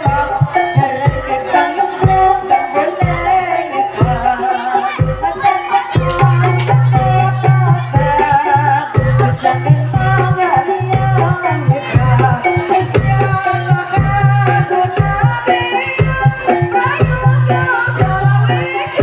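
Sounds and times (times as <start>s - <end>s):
drum beat: 0.0s - 4.4s, 5.0s - 19.0s
gamelan ensemble: 0.0s - 19.0s.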